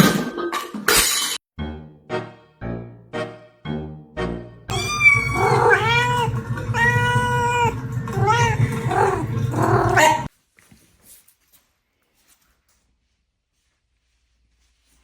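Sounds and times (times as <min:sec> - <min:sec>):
cat yowling: 0:04.7 - 0:10.3.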